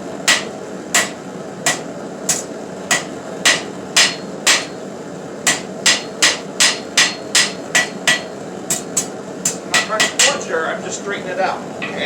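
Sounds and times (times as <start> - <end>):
hammer striking steel on anvil: 0.3 - 4.8, 5.5 - 10.4.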